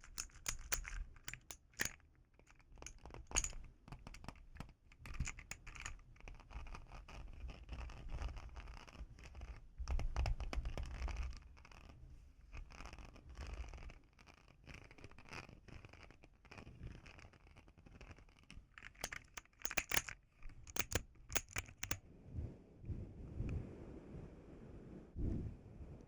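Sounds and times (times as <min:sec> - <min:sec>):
plastic keys clicking: 0:00.0 - 0:03.6, 0:05.0 - 0:06.0, 0:18.8 - 0:22.0
scratching and rubbing: 0:00.0 - 0:04.4, 0:05.0 - 0:09.6, 0:10.5 - 0:22.0.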